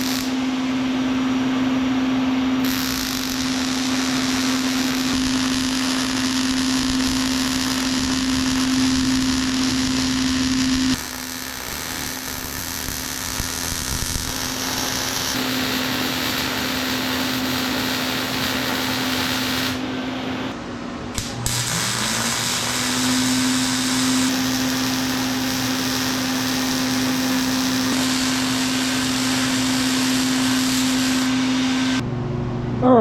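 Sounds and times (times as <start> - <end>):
welding arc crackling hiss: 0.0 - 0.4, 2.6 - 19.9, 21.2 - 32.0.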